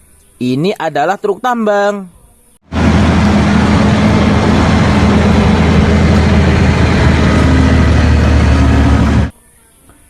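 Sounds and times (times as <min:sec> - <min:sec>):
diesel truck engine rumbling: 0:02.7 - 0:09.3.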